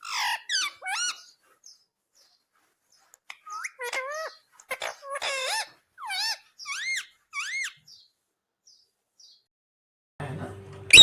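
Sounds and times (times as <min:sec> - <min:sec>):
parrot squawking: 0:00.0 - 0:01.4, 0:03.3 - 0:08.0.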